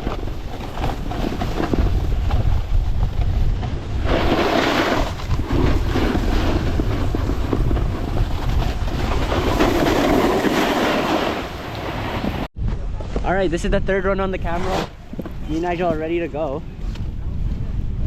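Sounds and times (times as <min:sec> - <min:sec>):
snowboard scraping over snow: 0:00.0 - 0:13.2.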